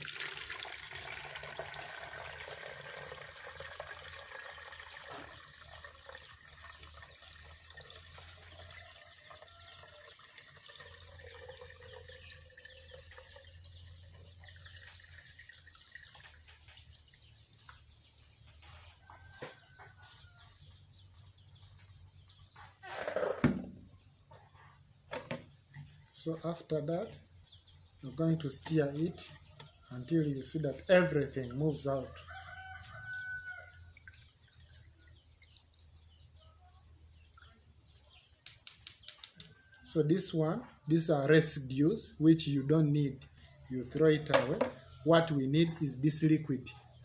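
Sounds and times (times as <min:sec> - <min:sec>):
water pouring through a sieve: 0:00.0 - 0:17.8, 0:30.3 - 0:36.1.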